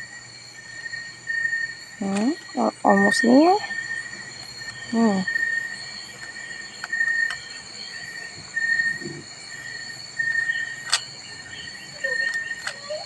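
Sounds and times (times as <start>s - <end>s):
high-pitched buzzing tones: 0.0s - 13.0s
plastic puzzle cube clicks: 10.8s - 11.1s.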